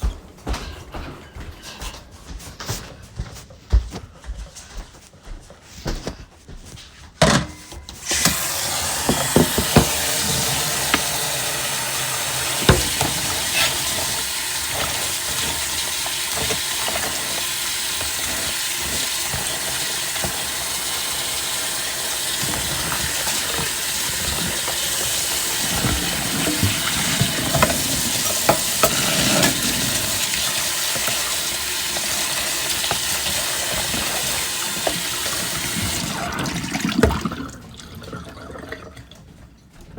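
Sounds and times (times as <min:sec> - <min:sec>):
dishes clinking: 0:07.2 - 0:14.2, 0:24.3 - 0:33.0
tap running into sink: 0:07.9 - 0:37.4.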